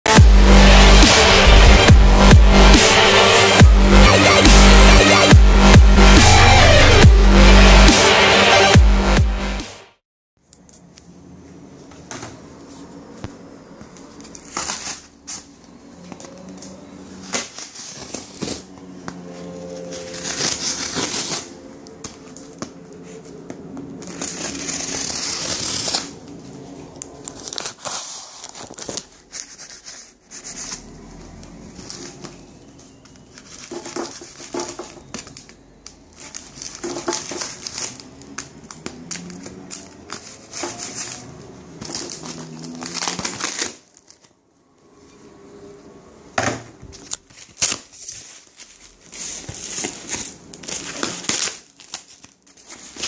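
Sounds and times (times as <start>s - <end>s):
packaging crinkling and tearing: 19.8s - 23.2s, 23.9s - 44.4s, 46.9s - 53.0s.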